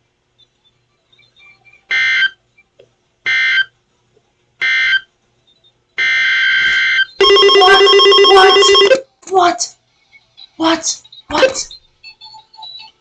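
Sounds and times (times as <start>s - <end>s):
multi-tone electronic alert: 7.2s - 9.0s.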